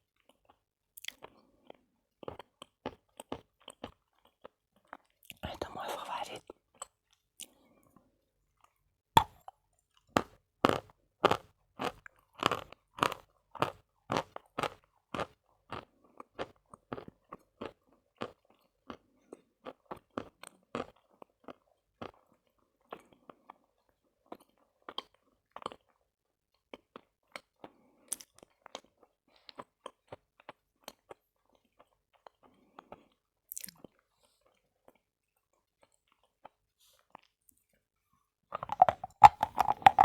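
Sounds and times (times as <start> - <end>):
chalk crunching between teeth: 5.4 - 6.4, 38.6 - 40.0.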